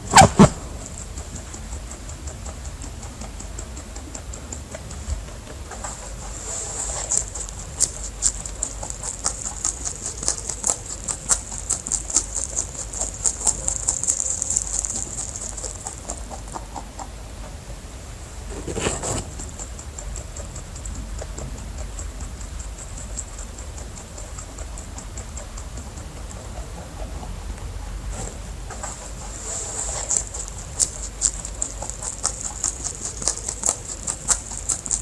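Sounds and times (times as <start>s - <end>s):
rabbit scuffle: 0.0s - 20.6s, 27.9s - 35.0s
rabbits clicking and rustling: 0.0s - 35.0s.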